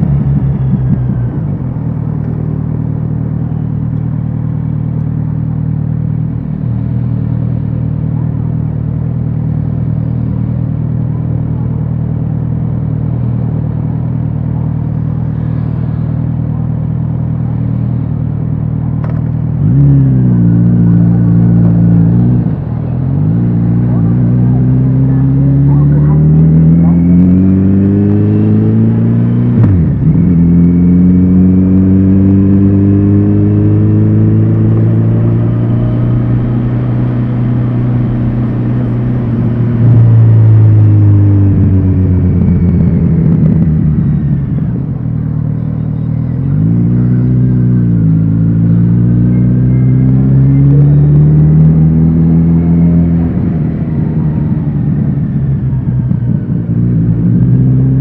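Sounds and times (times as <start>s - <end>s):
motorcycle engine while riding: 0.0s - 58.0s.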